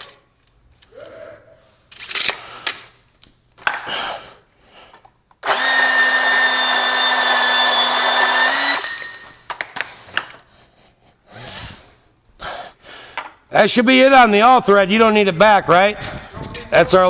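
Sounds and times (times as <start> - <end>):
power tool running: 5.4 - 9.0.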